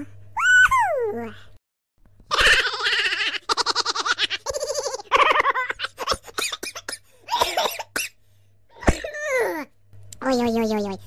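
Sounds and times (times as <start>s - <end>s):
high-pitched cartoon voices giggling: 2.3s - 6.7s.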